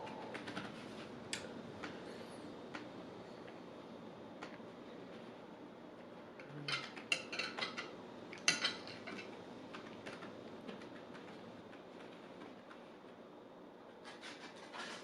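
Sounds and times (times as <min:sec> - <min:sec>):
utensil scraping a plate: 0:14.1 - 0:15.0.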